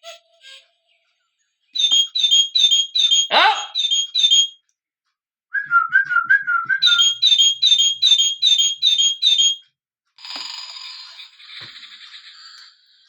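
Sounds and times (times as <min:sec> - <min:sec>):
recorded bird call from clock speaker: 0:01.8 - 0:04.5, 0:06.8 - 0:09.6.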